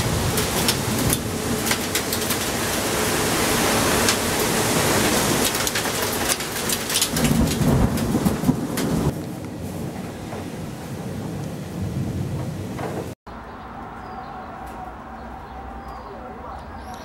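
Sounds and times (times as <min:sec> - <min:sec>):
heavy rain: 0:00.0 - 0:13.2
rumble of thunder: 0:00.0 - 0:13.2.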